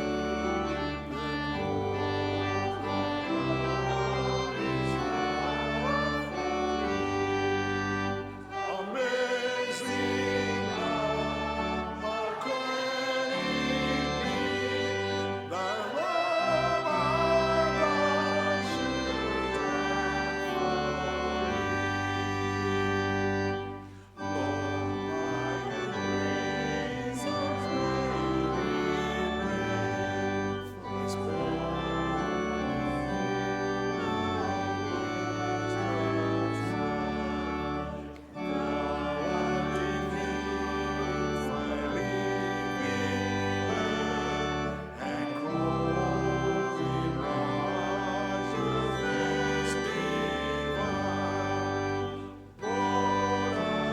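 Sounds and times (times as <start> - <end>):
organ playing hymn chords: 0.0 - 53.9
voices singing: 0.0 - 53.9.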